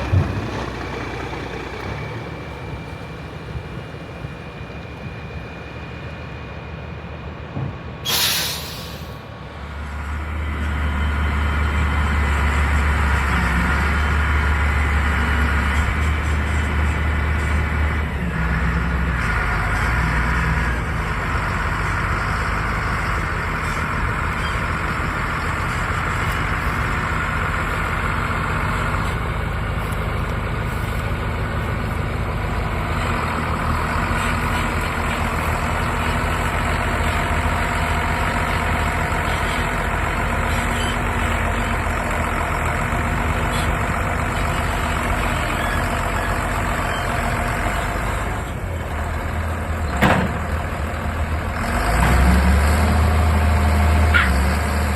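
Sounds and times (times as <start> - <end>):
diesel harvest machinery running: 0.0 - 54.9.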